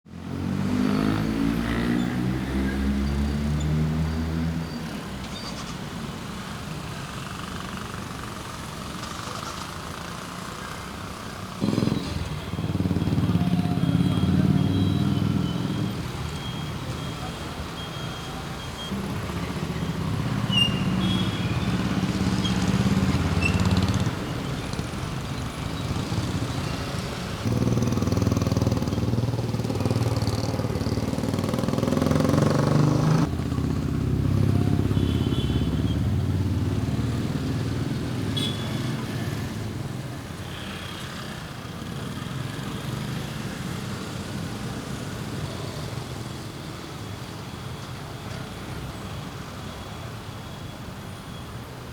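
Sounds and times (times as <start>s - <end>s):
motorcycles and cars passing: 0.1s - 50.8s
steady street hum: 0.1s - 51.9s.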